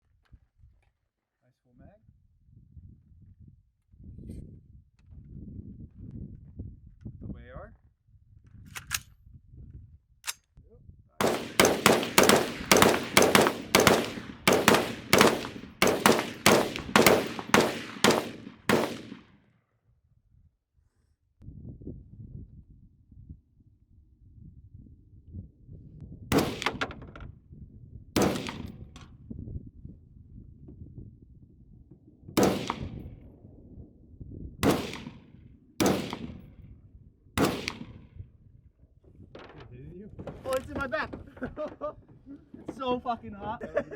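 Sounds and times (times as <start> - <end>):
gunshots with echo: 11.2 - 19.3, 32.4 - 33.0, 34.6 - 35.2, 35.8 - 36.4, 37.4 - 38.0.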